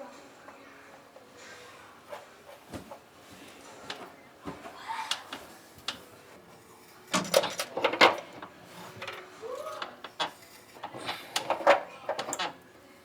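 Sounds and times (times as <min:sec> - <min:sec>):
metallic clanks of plumbing tools: 0:07.1 - 0:09.2, 0:09.8 - 0:12.6.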